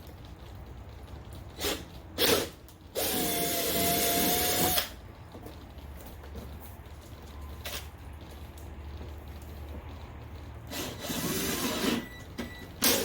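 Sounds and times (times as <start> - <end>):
cordless drill whining: 1.6 - 4.9, 10.7 - 12.0.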